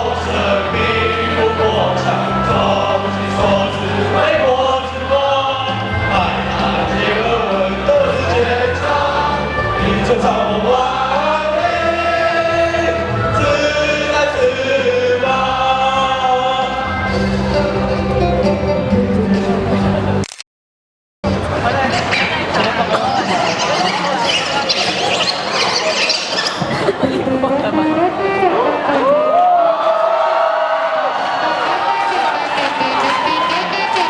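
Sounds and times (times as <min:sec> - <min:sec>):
choir singing: 0:00.0 - 0:17.9
accompaniment holding low chords: 0:00.0 - 0:20.2.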